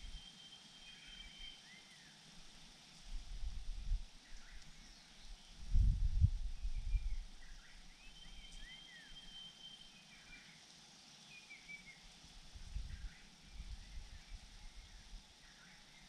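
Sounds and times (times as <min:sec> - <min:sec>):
small birds chirping: 0:04.2 - 0:05.7, 0:06.6 - 0:12.2.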